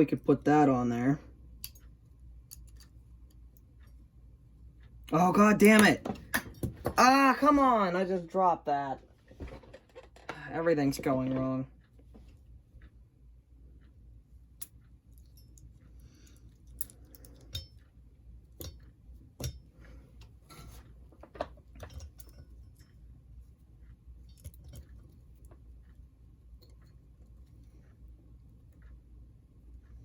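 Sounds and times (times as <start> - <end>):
faint low hum: 0.0 - 30.0
small parts clicking and tapping: 1.5 - 4.1, 13.8 - 30.0.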